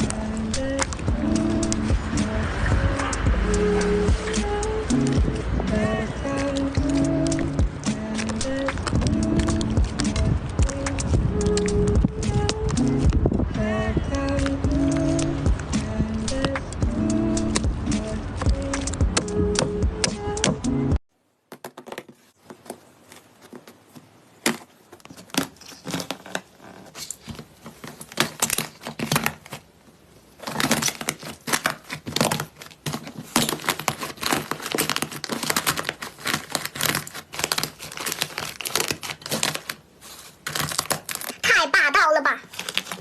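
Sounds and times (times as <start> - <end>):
slime crackling and popping: 6.3 - 13.0, 30.3 - 41.5.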